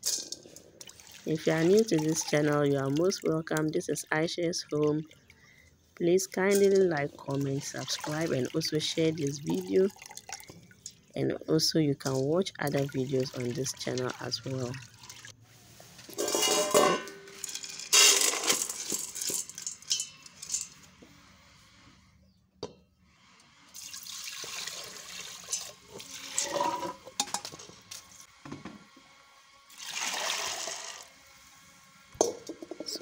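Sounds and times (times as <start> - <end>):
water splashing in a pot: 0.1 - 3.8, 6.5 - 11.1, 12.0 - 15.4, 23.7 - 27.5, 29.7 - 31.1.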